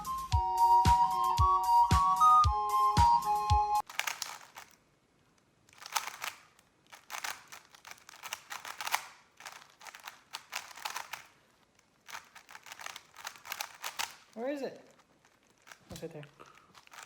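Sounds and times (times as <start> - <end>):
puzzle cube plastic clicks: 3.8 - 17.0.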